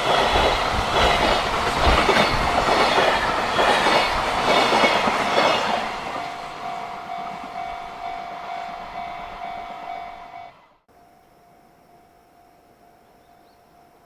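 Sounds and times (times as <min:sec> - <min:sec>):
freight train wheels clattering: 0:00.0 - 0:08.1
level crossing warning bell: 0:03.6 - 0:10.6.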